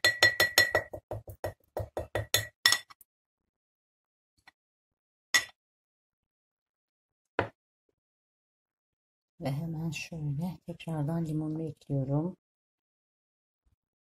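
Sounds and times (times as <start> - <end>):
glass jar clinking: 0.0 - 1.0, 2.2 - 3.0.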